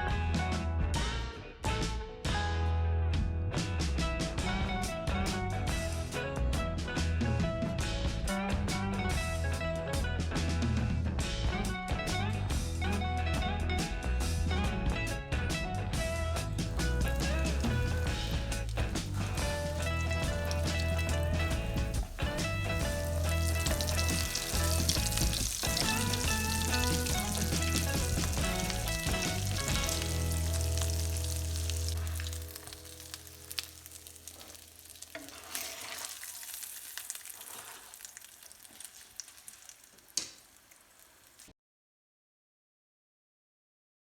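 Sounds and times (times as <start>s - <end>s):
background music: 0.0s - 36.3s
oil popping: 16.5s - 41.5s
food sizzling in oil: 16.6s - 41.5s.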